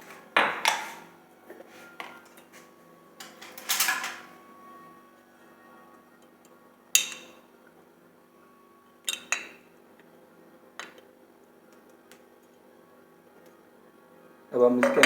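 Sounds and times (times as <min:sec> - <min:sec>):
kitchen utensils clinking: 0:00.0 - 0:01.1, 0:01.8 - 0:04.4, 0:07.0 - 0:07.4, 0:09.1 - 0:09.6, 0:14.7 - 0:15.0.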